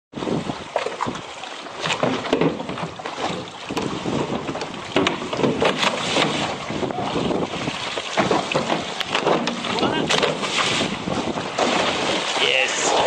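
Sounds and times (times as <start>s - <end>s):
water splashing along boat hull: 0.1s - 13.0s
wind buffeting microphone: 0.1s - 13.0s.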